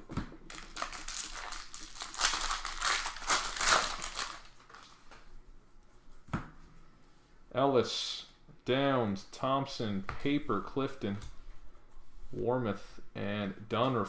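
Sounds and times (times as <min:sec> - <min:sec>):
plastic wrapper crinkling: 0:00.4 - 0:05.1.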